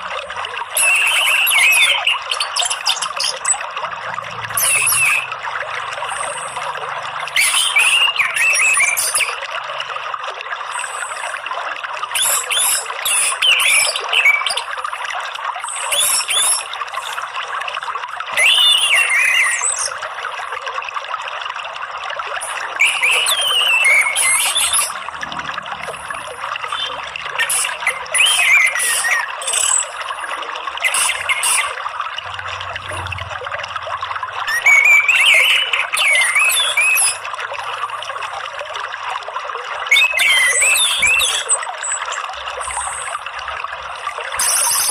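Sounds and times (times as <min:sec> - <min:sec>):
running water: 0:00.0 - 0:44.9
thin high chirps: 0:00.8 - 0:03.6, 0:04.6 - 0:05.4, 0:06.0 - 0:09.4, 0:22.4 - 0:25.2, 0:25.8 - 0:30.2, 0:30.8 - 0:31.8, 0:34.4 - 0:37.2, 0:39.9 - 0:43.2.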